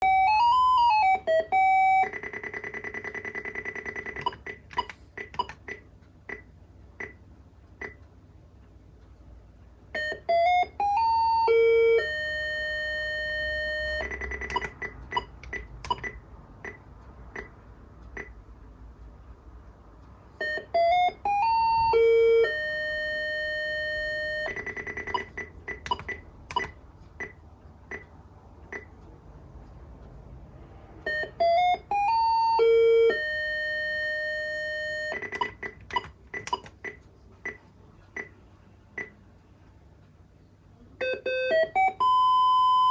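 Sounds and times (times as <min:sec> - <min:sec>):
electronic alarm clock tune: 0:00.0 - 0:05.8, 0:10.0 - 0:16.8, 0:20.4 - 0:28.0, 0:31.0 - 0:36.7, 0:41.0 - 0:42.9
steady clicking: 0:14.0 - 0:21.3, 0:24.5 - 0:30.3, 0:35.0 - 0:38.4.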